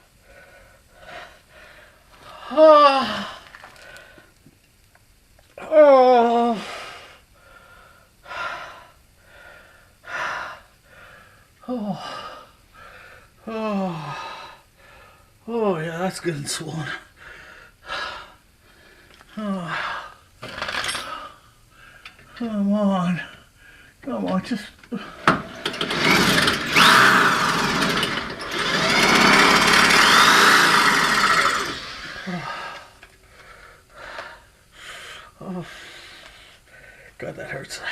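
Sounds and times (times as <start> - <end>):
man breathing hard: 0.0 - 4.3, 6.5 - 15.4, 17.0 - 20.3, 21.0 - 22.4, 23.3 - 24.0, 28.9 - 37.2
man groaning: 2.4 - 3.4, 5.6 - 6.7, 11.7 - 12.3, 13.4 - 14.2, 29.3 - 32.8
power tool running hard: 25.3 - 32.7.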